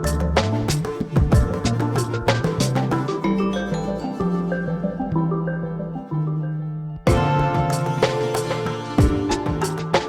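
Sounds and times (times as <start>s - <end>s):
percussive beats: 0.0s - 3.3s, 7.1s - 10.0s
mallet-like pitched notes: 0.0s - 10.0s.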